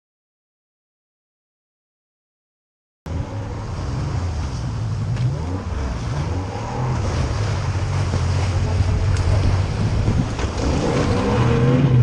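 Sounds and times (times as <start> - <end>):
boat engine running: 3.1 - 12.0
water noise: 3.1 - 12.0
wind: 3.1 - 12.0.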